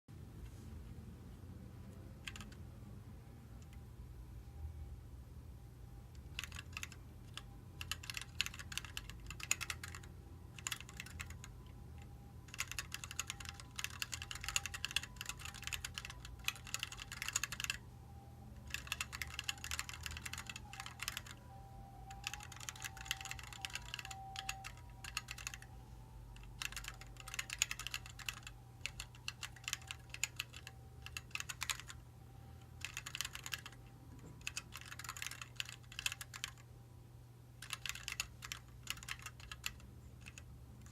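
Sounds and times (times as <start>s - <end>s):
mechanical keyboard key clicks: 2.2s - 2.6s, 6.2s - 11.5s, 12.5s - 17.8s, 18.6s - 21.4s, 22.1s - 25.7s, 26.4s - 32.0s, 32.8s - 36.6s, 37.6s - 40.9s.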